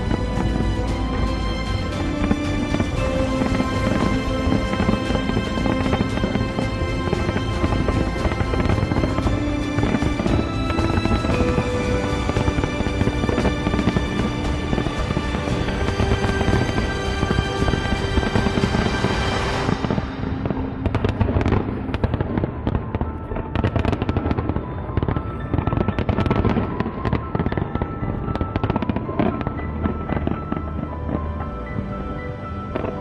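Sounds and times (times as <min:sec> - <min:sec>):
fireworks bangs and crackles: 0:00.0 - 0:33.0
music with long held notes: 0:00.0 - 0:33.0.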